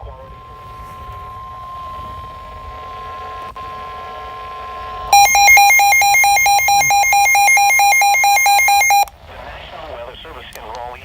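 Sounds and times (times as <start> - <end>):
rapid alarm beeping: 5.2 - 9.1
steady alert tone: 5.2 - 9.1.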